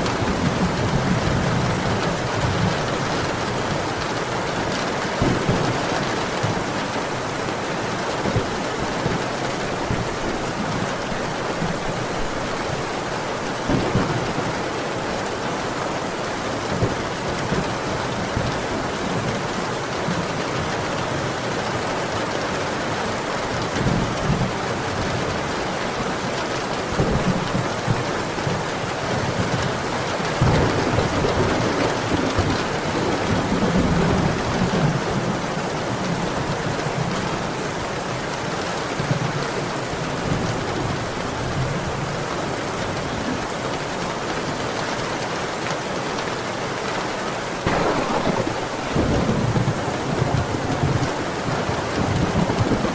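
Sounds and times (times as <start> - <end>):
heavy rain pouring: 0.0 - 52.9
thunder rumbling: 30.4 - 35.3, 47.6 - 52.9.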